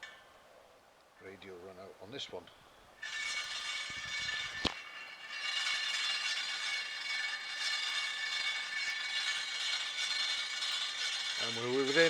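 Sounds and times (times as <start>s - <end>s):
spoked wheel whirring: 3.0s - 12.0s.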